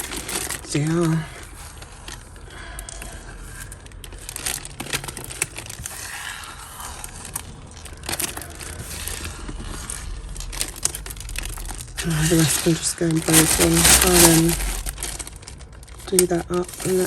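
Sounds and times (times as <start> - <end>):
plastic baggie crinkling: 0.0 - 17.0.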